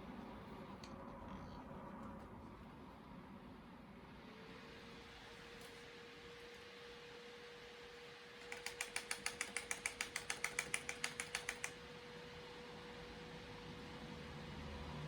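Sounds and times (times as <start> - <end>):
keyboard key tapped rapidly: 8.4 - 11.8.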